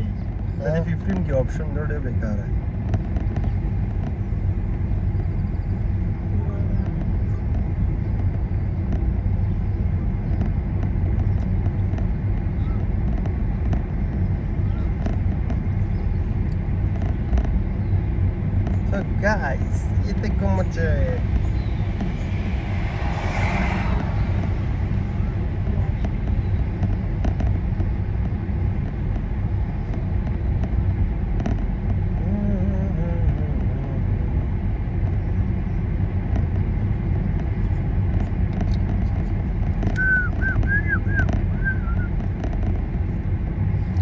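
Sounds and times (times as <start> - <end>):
car engine and tyre road noise: 0.0 - 44.0.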